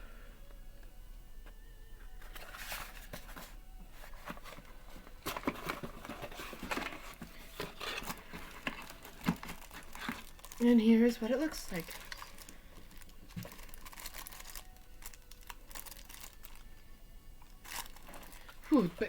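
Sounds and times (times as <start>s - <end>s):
packaging rustling and tapping: 1.4s - 16.8s, 17.4s - 19.0s.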